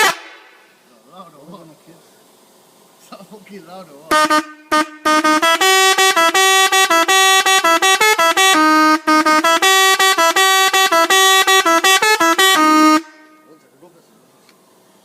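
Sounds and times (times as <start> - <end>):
bus musical horn tune: 0.0 - 0.4, 4.1 - 13.6.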